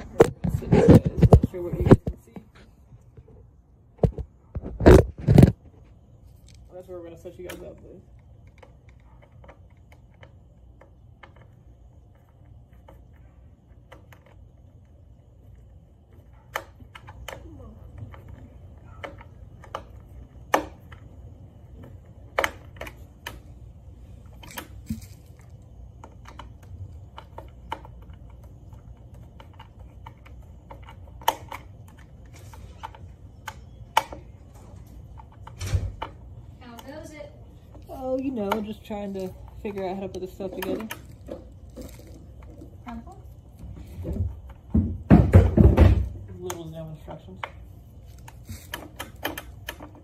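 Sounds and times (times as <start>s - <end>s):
steady low hum: 0.0s - 50.0s
plastic parts clicking and tapping: 21.7s - 23.5s, 24.3s - 50.0s.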